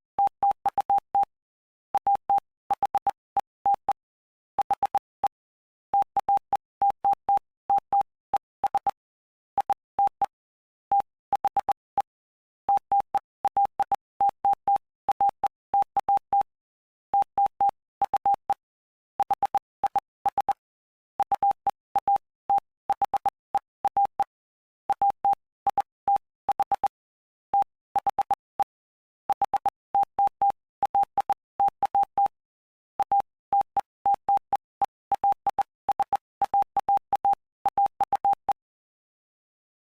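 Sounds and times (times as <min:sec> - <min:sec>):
morse code beeps: 0:02.0 - 0:04.0, 0:04.6 - 0:05.4, 0:06.0 - 0:09.0, 0:12.7 - 0:16.5, 0:21.2 - 0:24.3, 0:27.6 - 0:32.4, 0:33.0 - 0:38.6.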